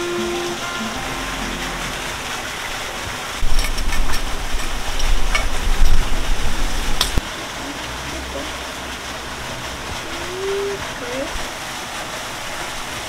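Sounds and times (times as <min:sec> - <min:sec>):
running water: 0:00.0 - 0:13.0
wind buffeting microphone: 0:03.4 - 0:07.2.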